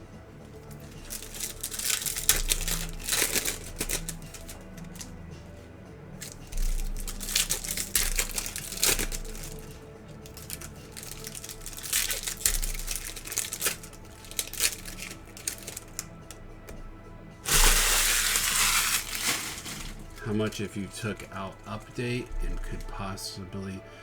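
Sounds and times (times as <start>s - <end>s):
faint background music: 0.0s - 24.0s
plastic packaging crinkling: 0.4s - 5.2s, 6.2s - 16.4s, 17.4s - 23.0s.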